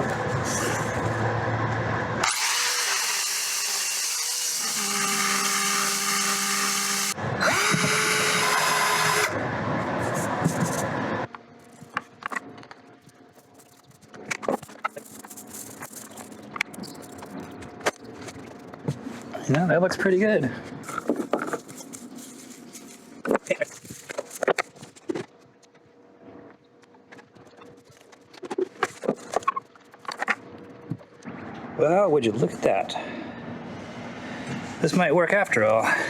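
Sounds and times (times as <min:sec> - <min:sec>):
power drill drilling: 0:02.2 - 0:09.4.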